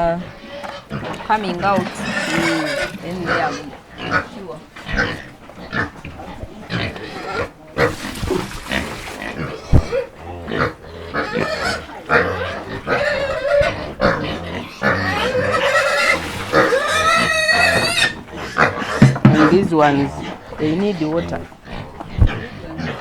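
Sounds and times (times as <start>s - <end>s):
pigs grunting and squealing: 0.0s - 23.0s
sharp knock: 19.0s - 19.5s.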